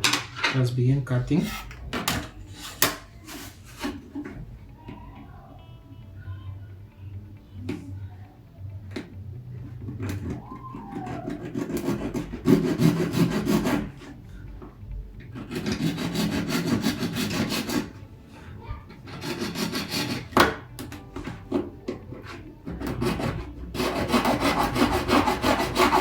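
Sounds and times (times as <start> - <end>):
blade sawing circuit board: 23.0 - 26.0.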